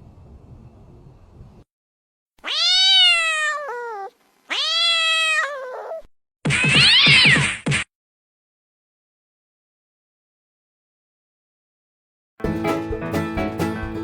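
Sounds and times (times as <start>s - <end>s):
cat meowing: 2.4s - 7.5s.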